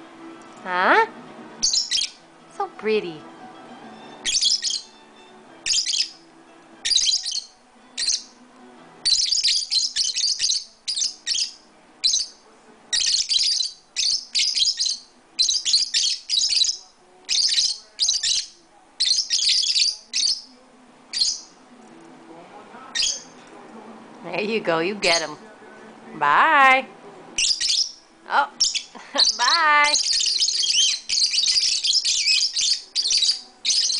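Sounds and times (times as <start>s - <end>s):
lovebirds chirping and squawking: 0.9s - 2.3s, 3.9s - 8.4s, 9.0s - 21.6s, 22.9s - 23.4s, 24.4s - 25.4s, 27.4s - 33.9s.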